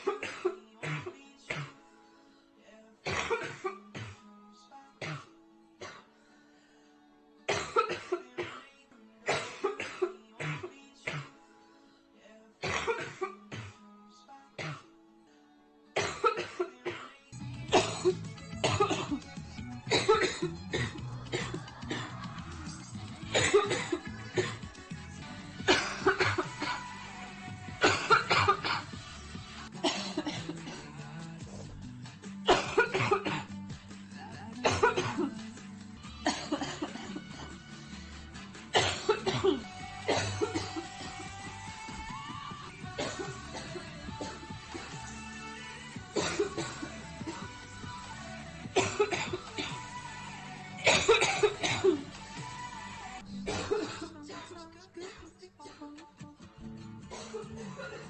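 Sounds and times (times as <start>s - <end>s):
girl coughing hard: 0.0s - 1.8s, 3.0s - 4.2s, 7.5s - 8.7s, 9.3s - 11.3s, 12.6s - 13.8s, 16.0s - 17.1s, 17.7s - 19.2s, 19.9s - 22.1s, 23.3s - 24.6s, 25.6s - 26.8s, 27.8s - 28.9s, 29.8s - 30.8s, 32.5s - 33.5s, 34.6s - 35.4s, 36.2s - 37.5s, 38.7s - 40.9s, 43.0s - 44.4s, 46.1s - 46.9s, 48.8s - 49.8s, 50.8s - 52.1s, 53.4s - 54.2s, 57.1s - 58.0s
background music: 0.0s - 58.0s.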